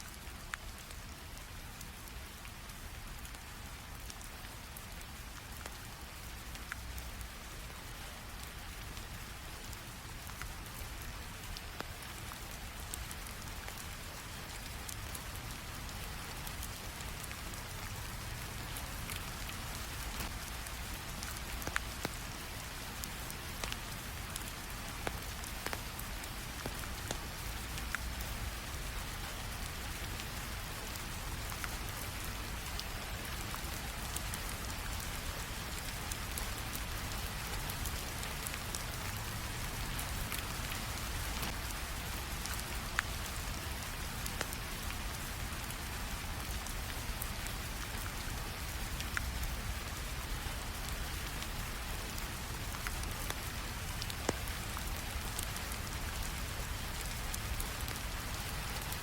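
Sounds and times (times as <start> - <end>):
steady rain falling: 0.0 - 59.0
wood fire crackling: 15.9 - 47.9, 48.5 - 55.5.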